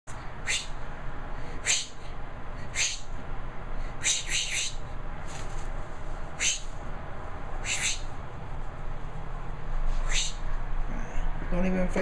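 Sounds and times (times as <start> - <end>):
cockatoo raspy calls: 0.4 - 0.9, 1.6 - 3.2, 3.9 - 4.9, 6.4 - 6.8, 7.6 - 8.2, 10.0 - 10.5.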